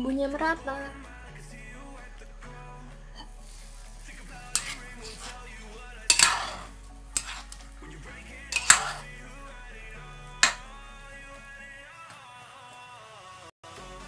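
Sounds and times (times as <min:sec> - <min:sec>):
utensil scraping and knocking pot: 0:04.4 - 0:05.4, 0:06.1 - 0:07.7, 0:08.5 - 0:09.1, 0:10.4 - 0:10.7.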